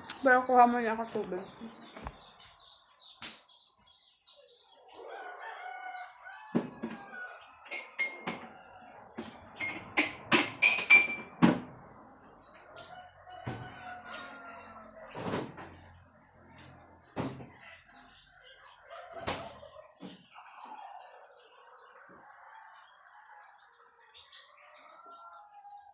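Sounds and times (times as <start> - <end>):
chicken clucking: 12.5 - 15.2, 17.5 - 25.9.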